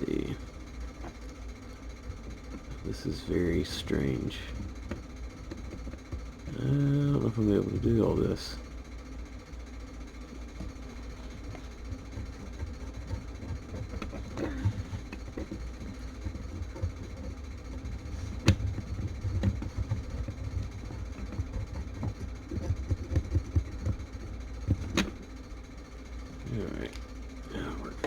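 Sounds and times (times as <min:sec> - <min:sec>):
steady low hum: 0:00.0 - 0:28.0
hand tools tapping circuit board: 0:11.4 - 0:25.3.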